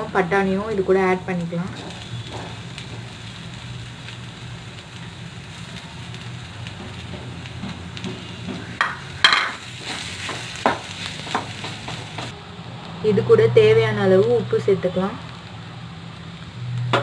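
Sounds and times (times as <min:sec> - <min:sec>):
faint sizzling: 0:00.0 - 0:17.0
spatula clacking on pan: 0:06.9 - 0:12.3.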